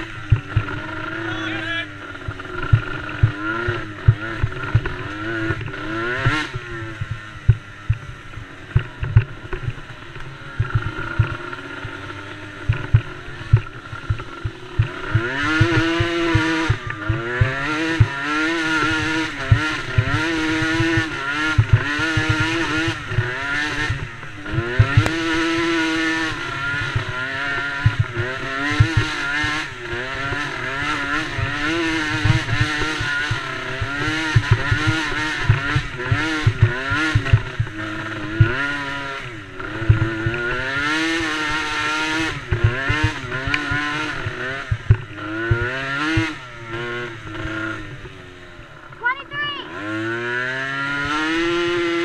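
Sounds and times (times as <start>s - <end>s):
atv engines revving: 0.0s - 52.0s.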